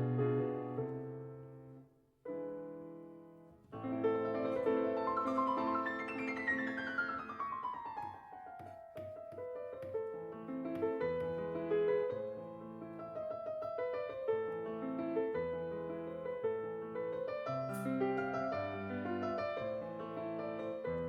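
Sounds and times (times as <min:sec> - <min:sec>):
classical solo piano: 0:00.0 - 0:21.0.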